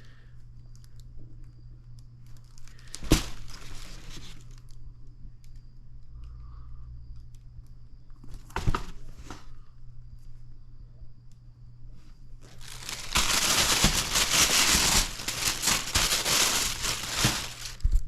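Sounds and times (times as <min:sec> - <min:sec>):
shoe packaging crinkling: 0:02.6 - 0:04.4, 0:12.4 - 0:18.0.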